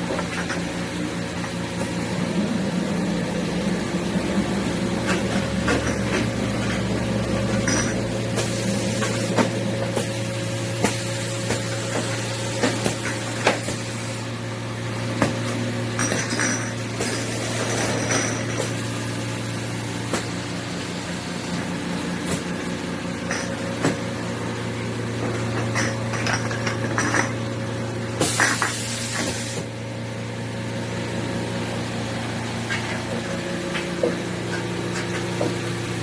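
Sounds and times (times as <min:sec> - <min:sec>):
machine motor hum: 0:00.0 - 0:15.9
hiss: 0:28.2 - 0:29.7.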